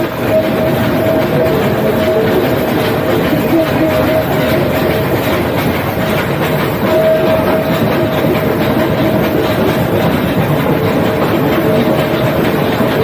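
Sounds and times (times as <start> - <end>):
steady whine: 0.0 - 13.0
toy train rumbling on track: 0.0 - 13.0.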